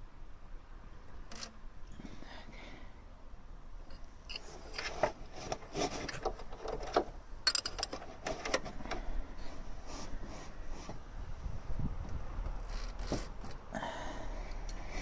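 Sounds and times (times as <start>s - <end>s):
metal clicks and knocks: 3.9s - 9.0s.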